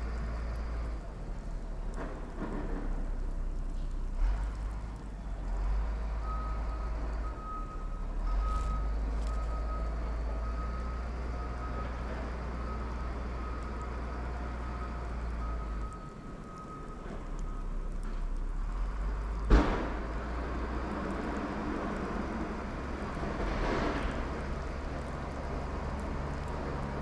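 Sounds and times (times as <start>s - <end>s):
low engine rumble: 0.0s - 27.0s
reversing alarm beeping: 6.2s - 17.9s.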